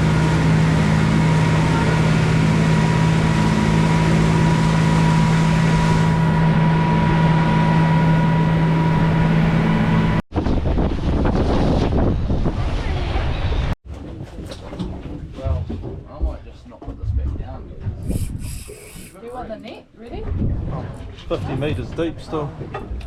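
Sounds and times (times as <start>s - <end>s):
rushing wind: 0.0s - 13.8s, 17.1s - 19.1s
motorboat engine running: 0.0s - 16.0s.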